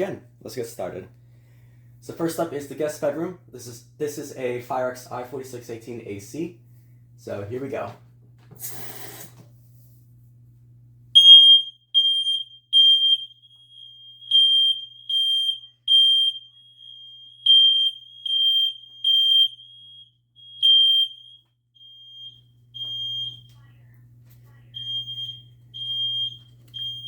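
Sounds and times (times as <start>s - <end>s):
smoke alarm beeping: 11.2s - 23.7s, 24.7s - 27.0s.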